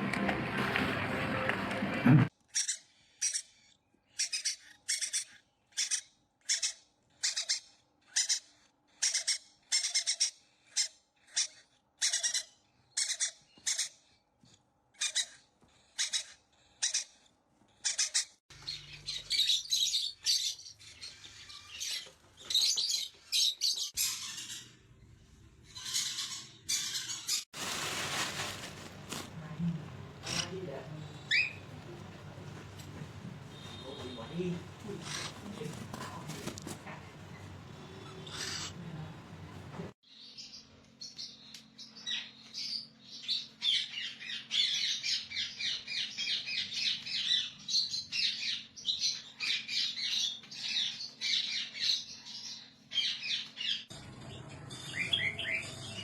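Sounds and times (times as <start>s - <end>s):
parrot calling and squawking: 2.5s - 3.6s, 4.2s - 14.1s, 15.0s - 17.2s, 17.8s - 22.1s, 37.4s - 38.8s.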